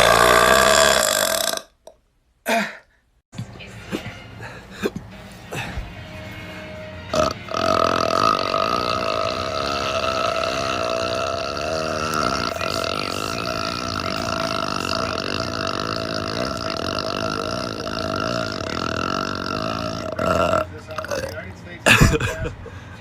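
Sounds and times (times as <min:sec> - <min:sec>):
man burping: 0:00.0 - 0:02.9, 0:07.1 - 0:22.4.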